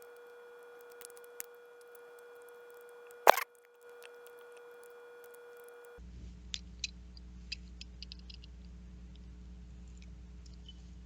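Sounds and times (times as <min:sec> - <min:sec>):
small parts and tools clicking: 0:00.0 - 0:08.7
faint steady hum: 0:00.0 - 0:11.0.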